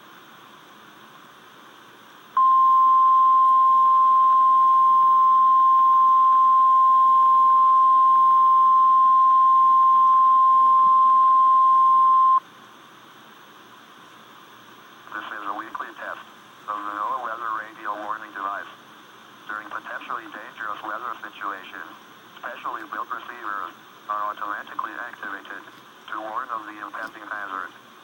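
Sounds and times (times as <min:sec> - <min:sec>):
steady alarm tone: 0:02.4 - 0:12.4
radio hiss: 0:13.2 - 0:28.0.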